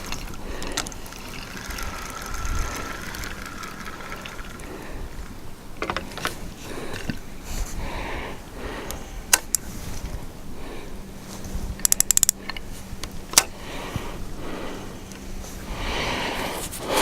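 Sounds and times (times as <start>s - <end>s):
ratchet-like clicks: 0.0s - 6.0s, 11.8s - 12.4s
fishing tackle clicks: 0.0s - 6.4s, 11.8s - 12.6s.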